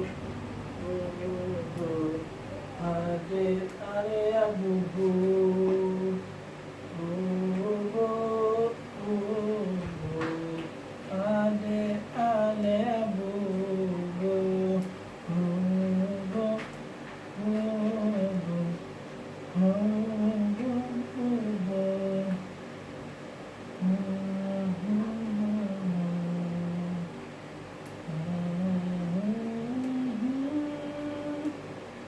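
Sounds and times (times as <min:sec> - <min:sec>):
person humming a lullaby: 0:00.8 - 0:06.3, 0:06.9 - 0:16.7, 0:19.5 - 0:22.4, 0:23.8 - 0:27.1, 0:28.1 - 0:31.6.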